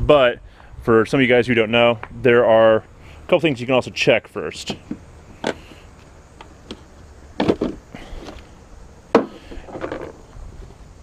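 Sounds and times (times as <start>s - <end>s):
knocks and clunks: 6.4s - 8.4s, 9.1s - 10.2s.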